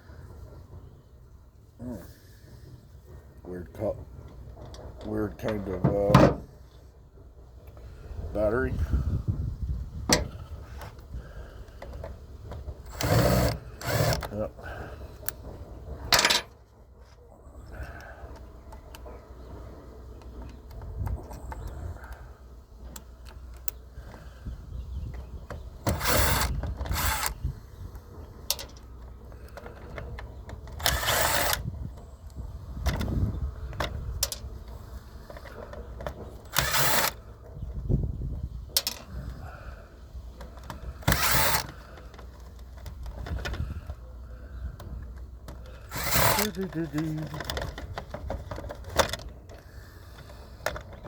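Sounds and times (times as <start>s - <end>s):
cordless drill running: 12.9s - 14.4s, 25.9s - 27.4s, 30.8s - 31.7s, 36.5s - 37.2s, 41.0s - 41.8s, 45.7s - 46.7s
plastic parts clicking and clattering: 44.8s - 51.0s.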